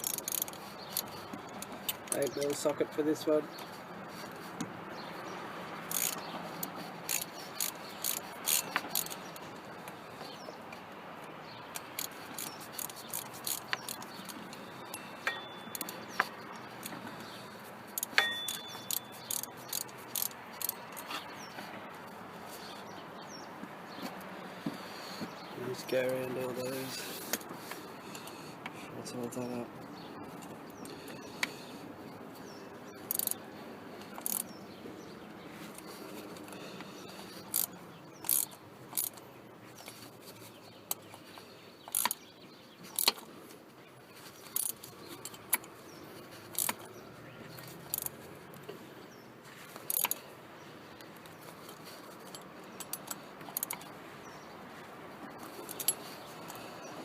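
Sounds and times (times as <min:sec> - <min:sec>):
tools and metal parts clinking: 0:11.8 - 0:21.3, 0:44.2 - 0:47.0, 0:49.6 - 0:50.3, 0:51.0 - 0:54.0, 0:55.3 - 0:57.0.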